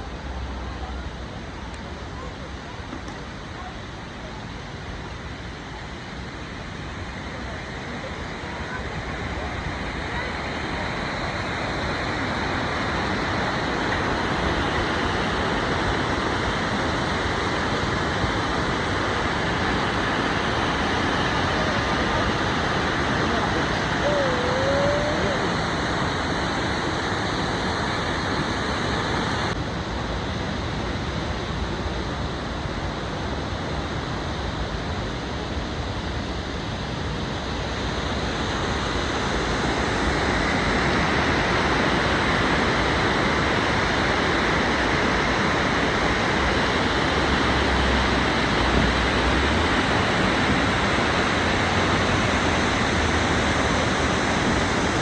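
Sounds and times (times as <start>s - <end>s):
waterfall rushing: 9.2s - 29.6s, 39.4s - 55.0s.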